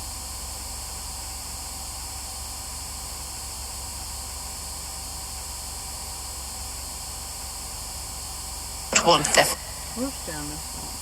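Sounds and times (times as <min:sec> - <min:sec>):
radio static hiss: 0:08.8 - 0:11.0.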